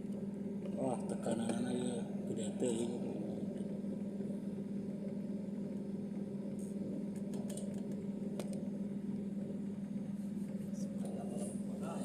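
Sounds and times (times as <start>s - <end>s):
refrigerator compressor humming: 0.0s - 12.0s.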